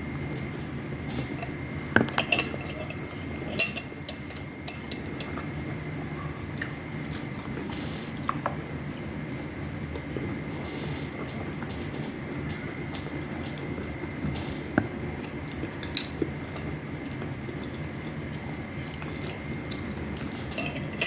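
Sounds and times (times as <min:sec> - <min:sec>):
steady low hum: 0:00.0 - 0:06.4, 0:18.0 - 0:21.0
cutlery clinking against a plate: 0:01.1 - 0:06.0, 0:19.7 - 0:21.0.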